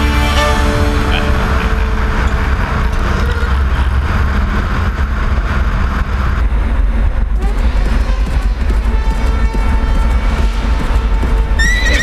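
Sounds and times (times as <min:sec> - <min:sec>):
engine and road rumble: 0:00.0 - 0:12.0
wind: 0:00.0 - 0:12.0.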